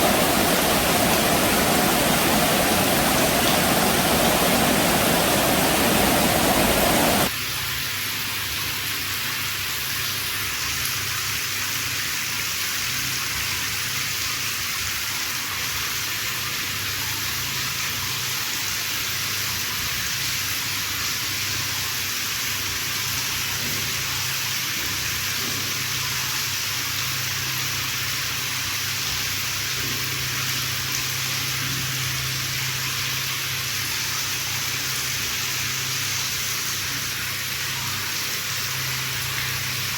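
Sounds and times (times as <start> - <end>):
heavy rain falling: 0.0 - 7.3
rush of running water: 0.0 - 7.4, 14.8 - 39.9.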